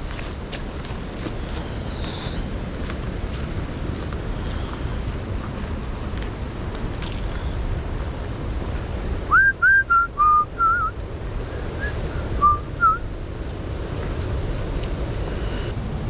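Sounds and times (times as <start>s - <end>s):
person whistling a tune: 9.3s - 10.9s, 11.8s - 13.0s.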